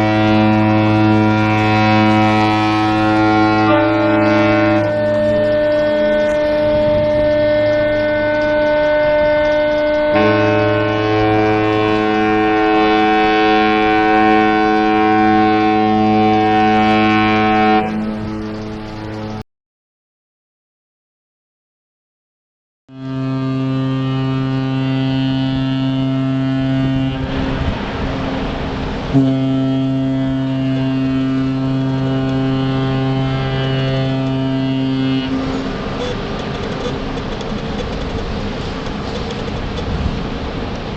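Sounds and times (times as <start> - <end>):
rushing noise: 0.0 - 19.4, 27.2 - 29.2
ship's horn blast: 0.0 - 19.4, 22.9 - 37.5.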